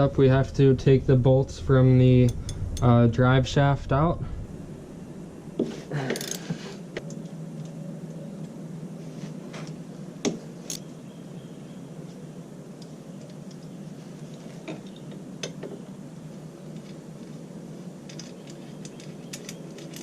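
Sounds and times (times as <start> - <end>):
hand tools clicking on bolts: 18.1 - 20.0.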